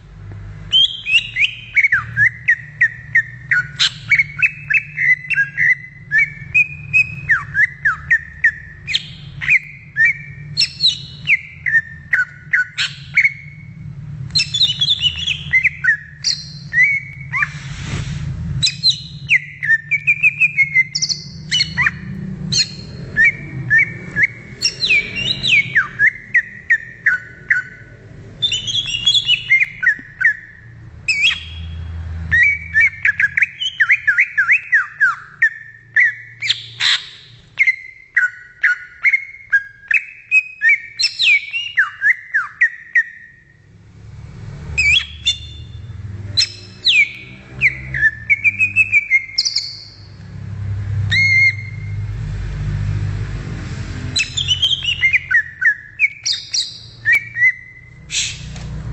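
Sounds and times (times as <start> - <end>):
low steady hum: 0.0 - 32.0
bird singing whistled chirps: 0.7 - 17.6, 18.6 - 43.5, 44.8 - 50.1, 51.1 - 52.0, 54.2 - 58.5
brief hiss: 17.5 - 18.3.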